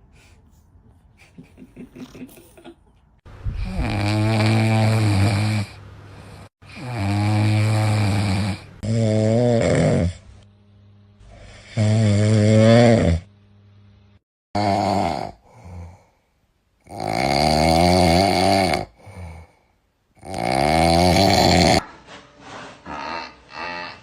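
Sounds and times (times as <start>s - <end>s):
animal snoring loudly: 3.6s - 5.8s, 6.7s - 10.2s, 11.3s - 13.3s, 14.6s - 16.0s, 16.8s - 19.5s, 20.2s - 21.8s.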